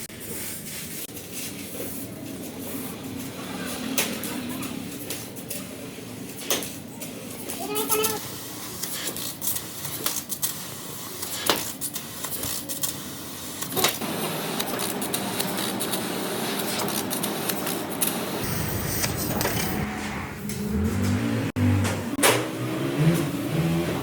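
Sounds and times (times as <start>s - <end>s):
steady machine noise: 16.7s - 21.6s.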